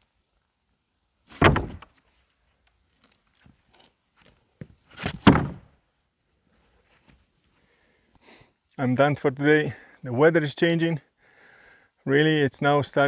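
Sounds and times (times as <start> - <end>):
loud thunks: 1.3 - 1.9, 5.0 - 5.7.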